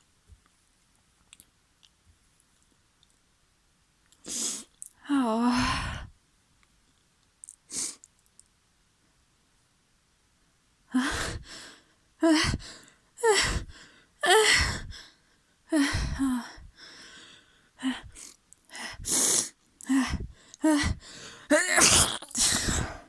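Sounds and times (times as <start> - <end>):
person sneezing: 21.5 - 23.0.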